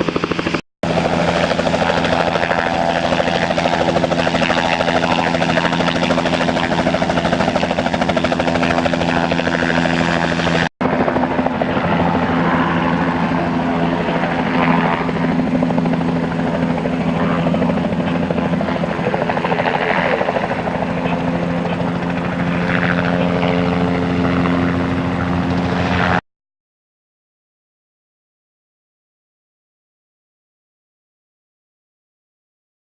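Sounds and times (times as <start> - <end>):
helicopter drone: 0.0 - 26.2.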